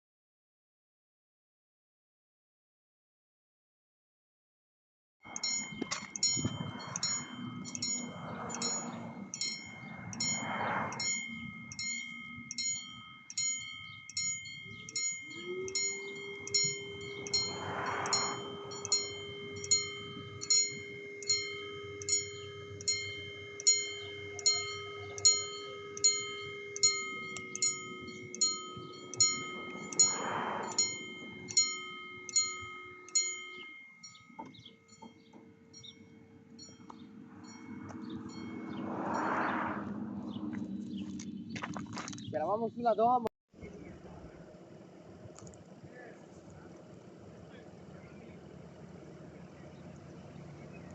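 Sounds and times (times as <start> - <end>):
level crossing bell ringing: 5.3 - 39.4
long steady low tone: 5.3 - 40.4, 43.6 - 50.9.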